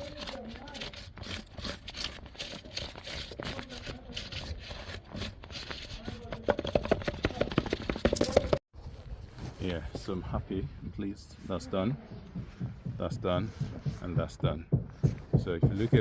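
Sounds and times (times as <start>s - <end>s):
scraping: 0.0s - 8.6s.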